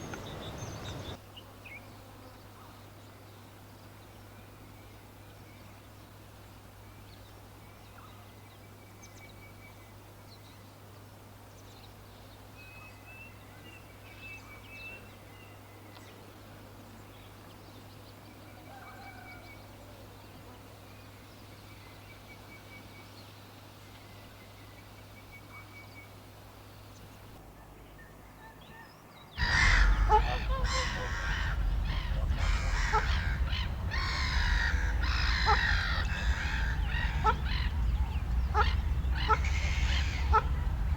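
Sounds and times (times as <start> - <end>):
faint bird chirps and trills: 0.0 - 40.9
loud harsh bird calls: 29.4 - 40.9
steady low hum: 29.4 - 40.9.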